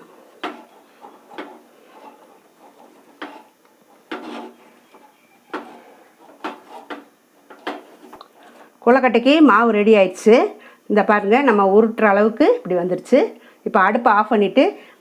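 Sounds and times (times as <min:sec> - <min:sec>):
ladle scraping and knocking pan: 0:00.0 - 0:08.2.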